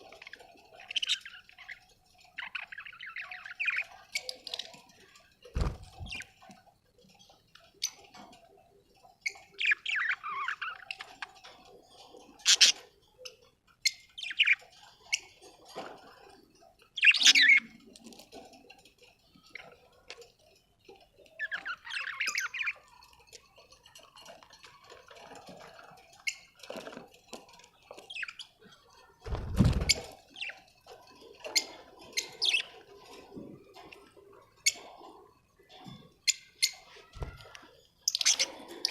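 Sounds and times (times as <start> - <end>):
budgerigars chirping and squawking: 0.0 - 4.7, 5.6 - 6.5, 9.2 - 15.4, 17.0 - 17.7, 21.3 - 23.0, 31.4 - 33.2, 36.3 - 38.9.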